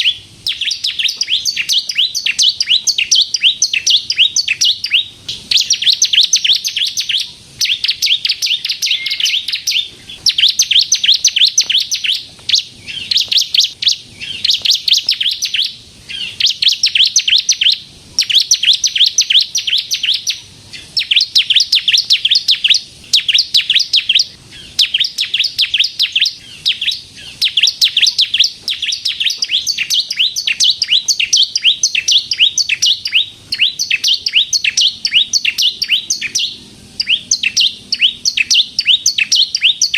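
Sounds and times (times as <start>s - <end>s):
bird singing rapid trills: 0.0s - 39.9s.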